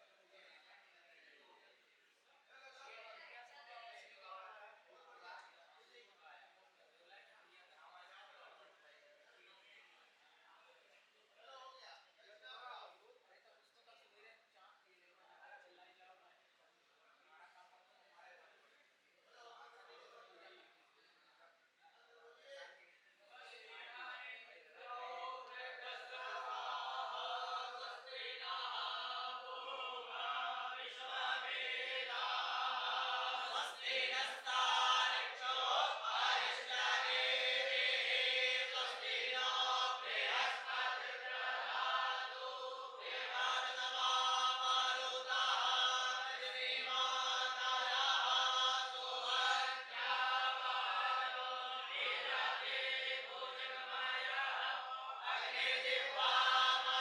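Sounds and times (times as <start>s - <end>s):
young people chanting in chorus: 24.7s - 57.0s.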